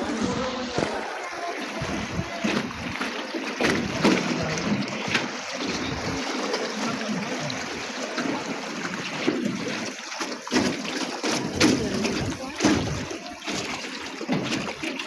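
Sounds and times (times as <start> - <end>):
oars knocking and splashing: 0.0 - 15.0
water splashing around a boat: 0.0 - 15.0.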